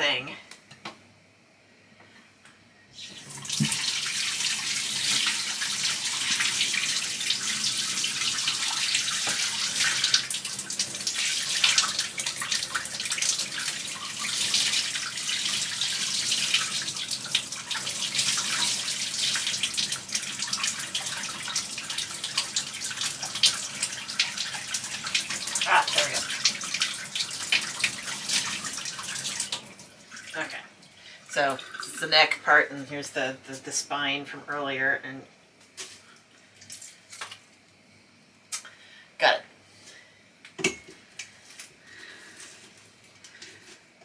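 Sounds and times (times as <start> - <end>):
water running from tap: 3.0 - 33.0.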